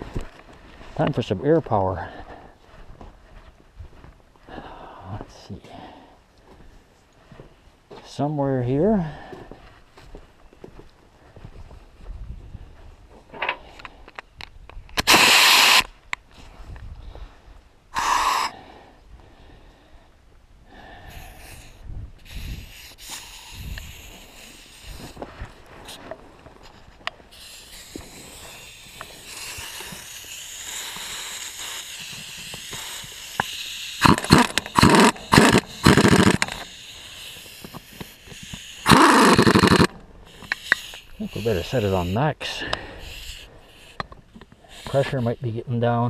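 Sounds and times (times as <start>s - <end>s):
compressed air hissing: 15.0s - 15.9s, 17.9s - 18.6s, 20.8s - 26.0s, 27.2s - 45.7s
pneumatic impact wrench hammering: 15.0s - 15.9s, 21.1s - 25.2s, 27.3s - 45.2s.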